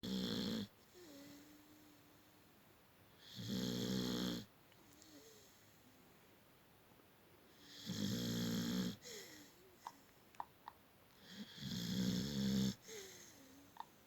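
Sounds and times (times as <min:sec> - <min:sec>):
dog snoring: 0:00.0 - 0:01.4, 0:03.2 - 0:04.5, 0:07.6 - 0:09.0, 0:11.2 - 0:13.1.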